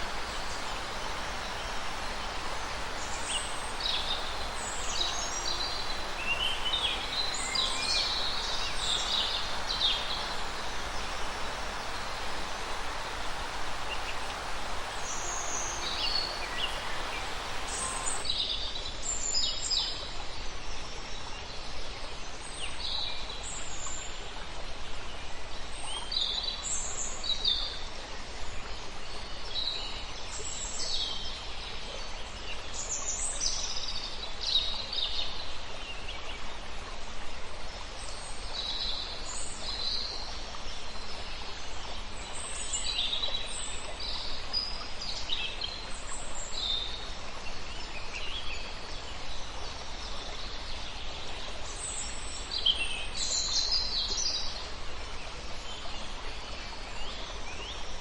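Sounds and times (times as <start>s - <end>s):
wild birds chirping: 0.0s - 18.2s
background rush of noise: 0.0s - 27.2s.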